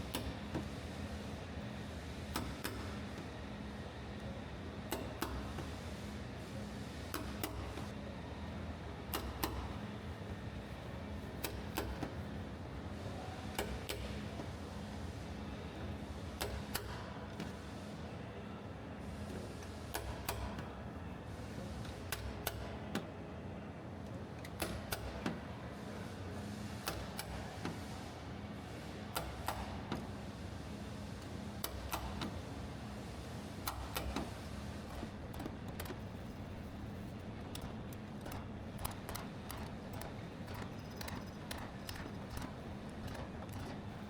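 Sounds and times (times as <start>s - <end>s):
steady low hum: 32.0s - 44.0s
sharp metallic clicks and taps: 37.4s - 44.0s.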